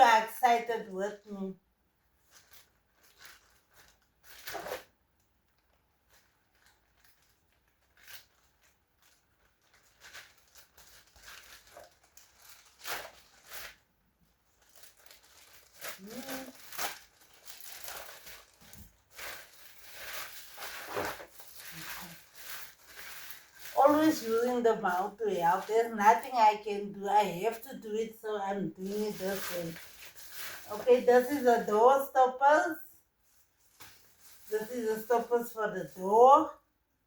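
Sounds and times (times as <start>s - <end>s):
packaging crinkling and tearing: 2.2s - 24.6s, 28.8s - 31.4s.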